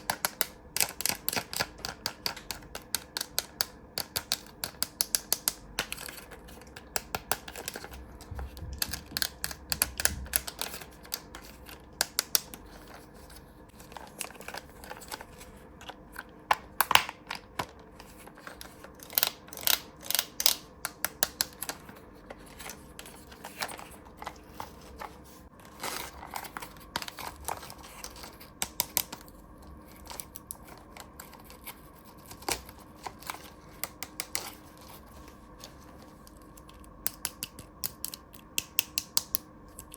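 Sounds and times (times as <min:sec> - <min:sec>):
plastic toy pieces clicking: 0:00.0 - 0:07.9.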